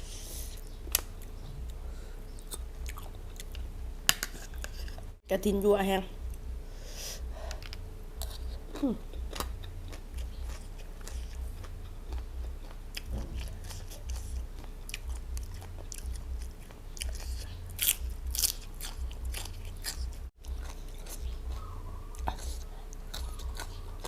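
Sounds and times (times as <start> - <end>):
chewing and crunching food: 0.0 - 5.2, 7.2 - 24.0.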